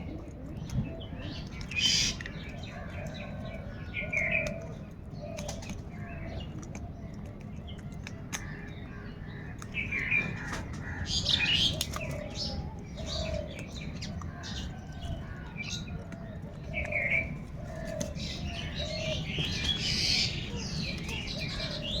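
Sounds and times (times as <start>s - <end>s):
crows cawing: 10.1s - 12.3s.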